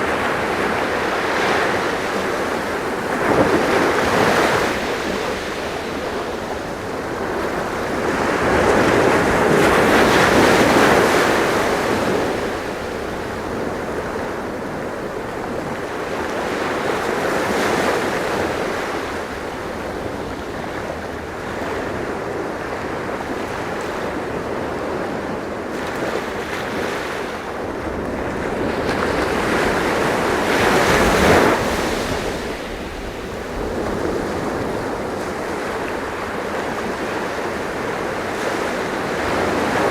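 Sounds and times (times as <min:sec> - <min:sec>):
sea waves breaking: 0:00.0 - 0:39.9.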